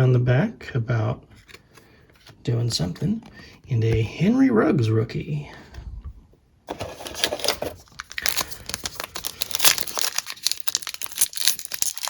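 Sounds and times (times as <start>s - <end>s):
card pack wrapper crinkling: 6.7s - 12.0s.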